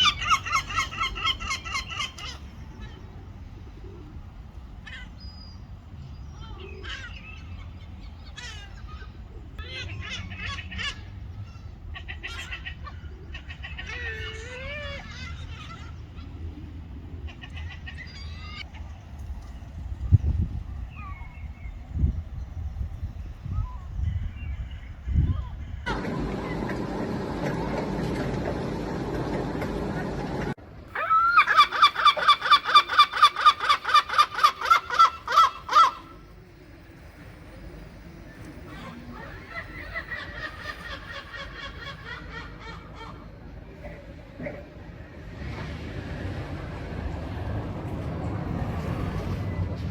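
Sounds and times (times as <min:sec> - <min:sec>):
gulls calling: 0:00.0 - 0:49.9
low rumble: 0:18.9 - 0:30.6.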